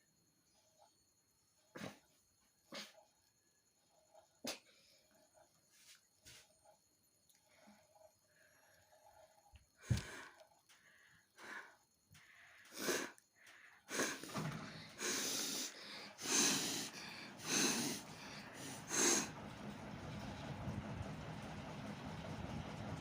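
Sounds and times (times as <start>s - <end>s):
person blowing and snorting through nose: 12.7s - 13.1s, 13.9s - 14.3s, 15.0s - 18.0s.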